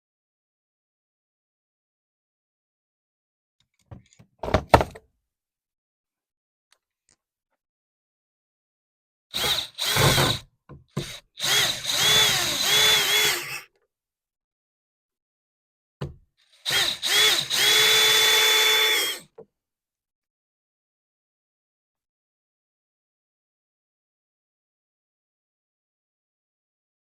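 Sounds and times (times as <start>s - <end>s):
power drill whining: 9.3s - 13.7s, 16.5s - 19.3s.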